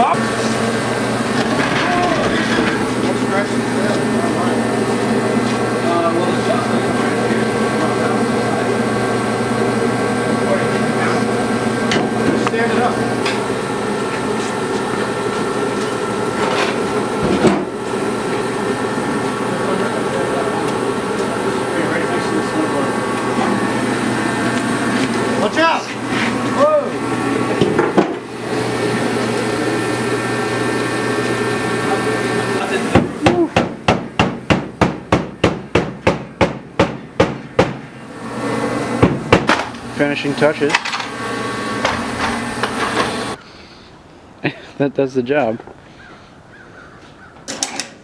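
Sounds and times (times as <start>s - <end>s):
motor running: 0.0s - 36.0s, 37.5s - 43.4s
hammer blows: 32.8s - 37.9s.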